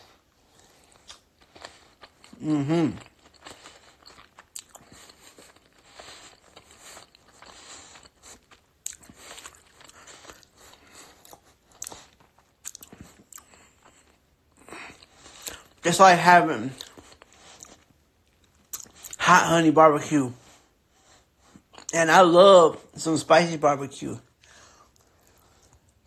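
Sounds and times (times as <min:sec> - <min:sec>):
chewing and lip smacking: 0:00.4 - 0:15.8, 0:16.7 - 0:19.2, 0:21.1 - 0:22.0, 0:24.2 - 0:26.0
person humming: 0:02.4 - 0:03.0.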